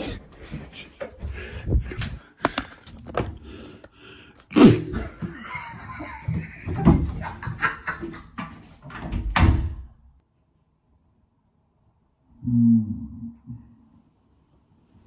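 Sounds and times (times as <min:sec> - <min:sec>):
knocks and thumps: 0:05.0 - 0:09.9.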